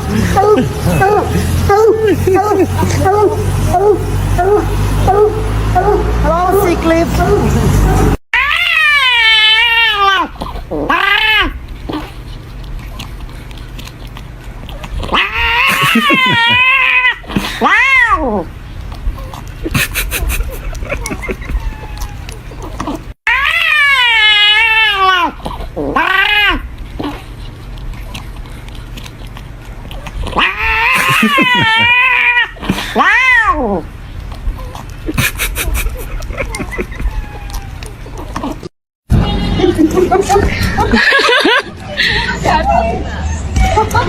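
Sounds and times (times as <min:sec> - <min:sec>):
cat meowing: 0:08.4 - 0:11.6, 0:15.1 - 0:18.5, 0:21.5 - 0:26.6, 0:30.4 - 0:33.8, 0:37.0 - 0:38.2
cat yowling: 0:08.4 - 0:12.1, 0:15.0 - 0:18.5, 0:21.1 - 0:27.2, 0:30.3 - 0:33.9, 0:36.7 - 0:38.7.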